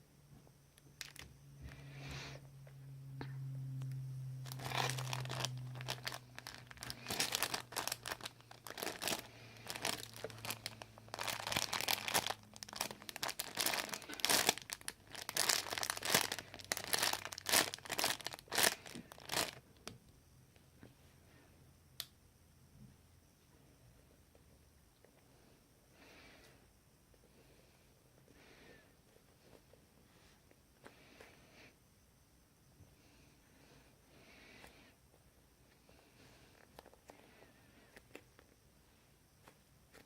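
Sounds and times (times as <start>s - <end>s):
plastic crinkling and rustling: 1.0s - 1.2s, 4.4s - 19.6s.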